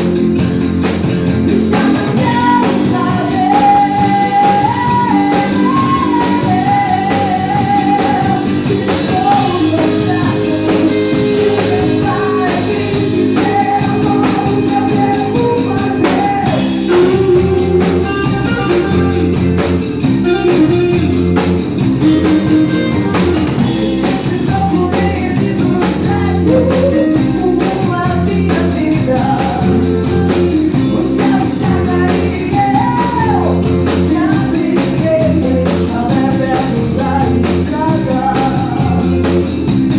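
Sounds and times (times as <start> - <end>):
rock band playing live: 0.0 - 39.9
person singing: 1.4 - 39.9.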